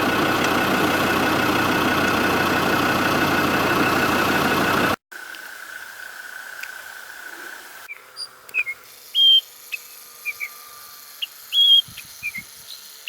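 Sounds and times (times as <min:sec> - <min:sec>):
vehicle drone: 0:00.0 - 0:05.0
birds chirping and whistling: 0:07.9 - 0:09.5.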